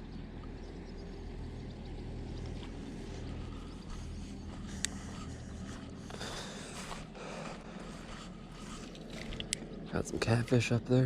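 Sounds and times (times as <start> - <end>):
footsteps and rustling: 2.4 - 10.4.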